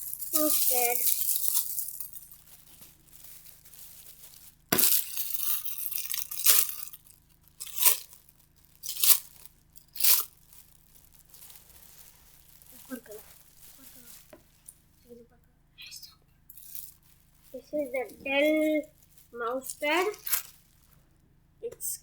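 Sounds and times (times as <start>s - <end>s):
packaging ripping: 0.0s - 14.4s, 19.0s - 20.8s
packaging rustling: 0.0s - 14.9s, 18.8s - 21.0s.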